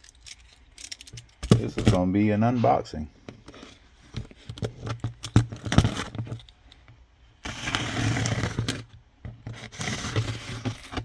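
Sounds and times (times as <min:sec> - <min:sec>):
box scraping on desk: 0:07.4 - 0:11.0.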